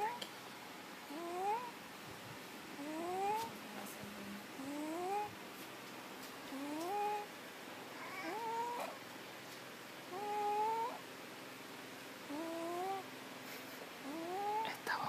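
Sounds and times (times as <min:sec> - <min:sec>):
pet snoring with rising tone: 0:12.3 - 0:13.0.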